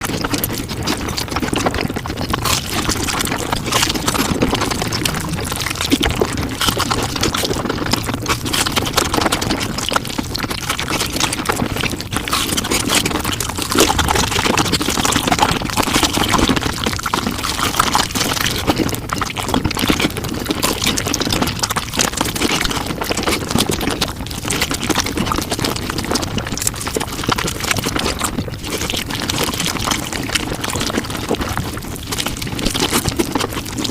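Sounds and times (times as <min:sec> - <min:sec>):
sped-up chewing and mouth noises: 0:00.0 - 0:33.9.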